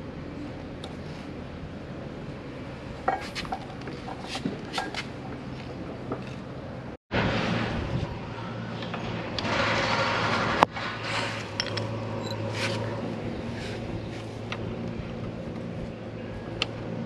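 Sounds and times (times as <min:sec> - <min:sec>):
hand tools scraping metal: 0:09.5 - 0:12.9.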